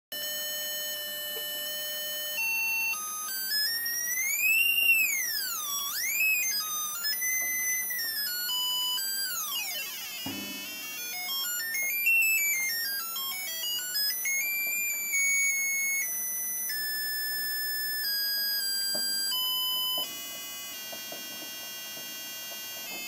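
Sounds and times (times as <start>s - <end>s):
square-wave tone changing pitch: 1.3s - 16.0s.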